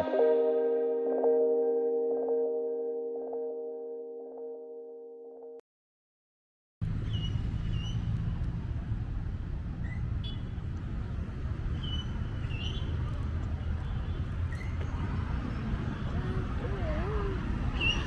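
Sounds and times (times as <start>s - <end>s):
car engine and tyres rumbling: 6.8s - 18.0s.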